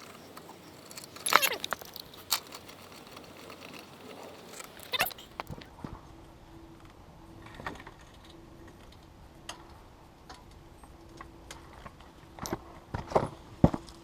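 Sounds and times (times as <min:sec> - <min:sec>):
clicks and knocks of hand tools: 0:00.0 - 0:05.7.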